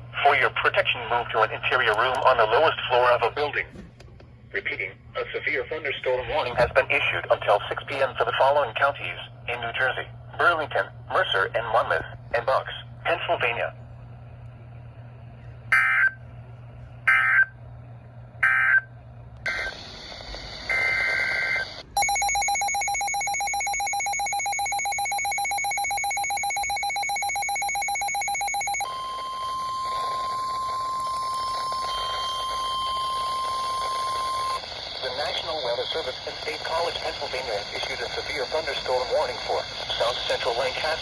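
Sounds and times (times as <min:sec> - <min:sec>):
steady beep-like alert tone: 0:22.0 - 0:29.8.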